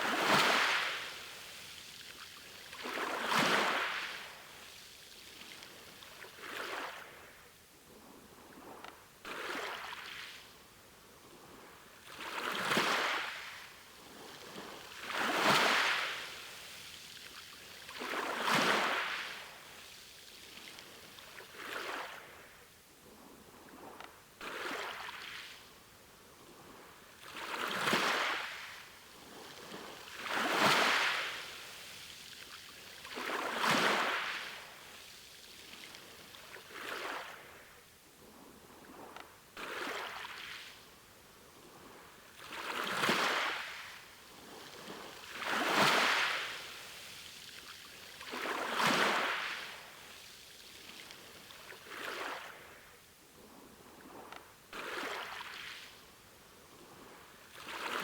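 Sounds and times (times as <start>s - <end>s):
sea waves washing onto shore: 0.0s - 7.2s, 12.0s - 22.4s, 27.2s - 37.7s, 42.4s - 52.9s.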